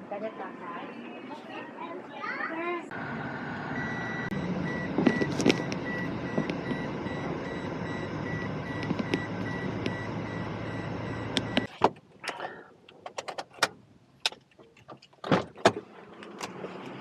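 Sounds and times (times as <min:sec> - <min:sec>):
engine running: 0:02.9 - 0:11.7
vehicle warning beeper: 0:02.9 - 0:11.7.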